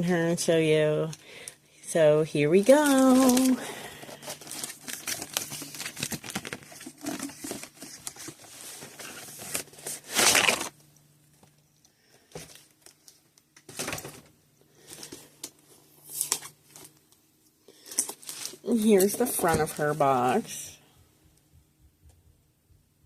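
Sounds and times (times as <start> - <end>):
packaging crinkling: 2.6 - 10.8, 17.8 - 19.9.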